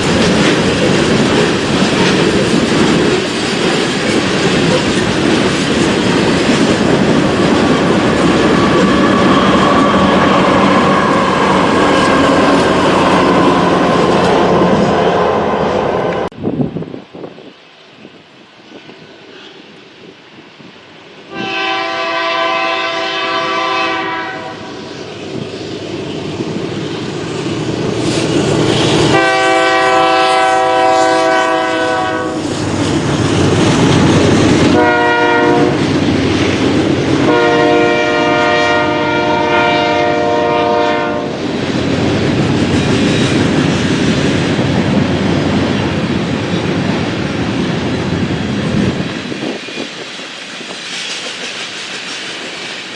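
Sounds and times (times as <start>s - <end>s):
train rumble: 0.0s - 52.9s
locomotive horn blasts: 21.3s - 24.9s, 29.0s - 32.4s, 34.7s - 35.8s, 37.2s - 41.4s.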